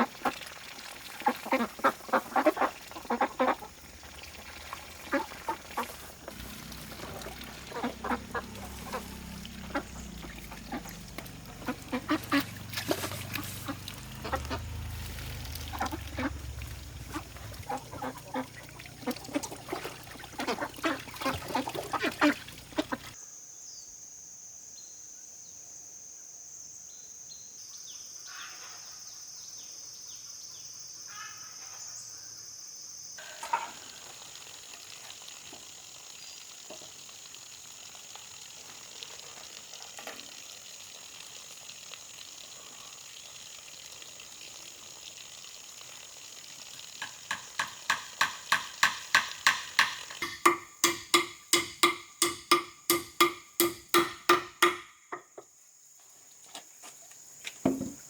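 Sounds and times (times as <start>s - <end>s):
ringing strikes: 50.2s - 54.8s.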